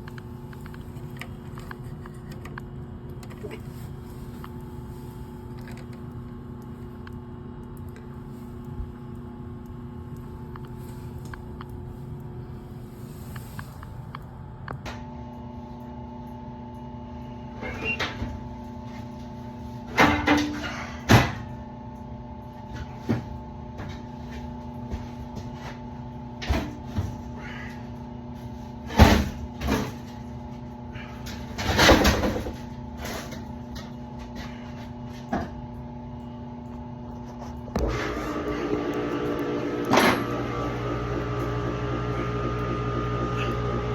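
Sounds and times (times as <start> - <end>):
machine hum: 0.0 - 43.9.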